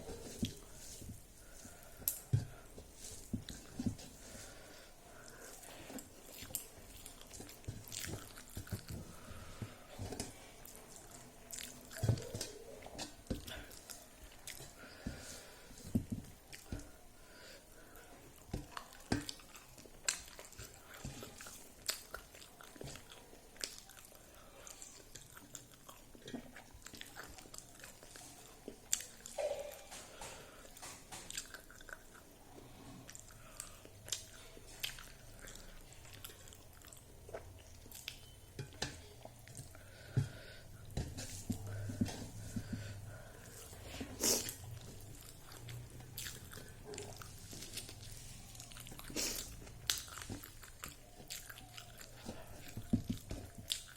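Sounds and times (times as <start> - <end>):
person chewing and biting: 5.2 - 15.6, 18.6 - 29.4, 31.1 - 38.4, 44.2 - 53.9.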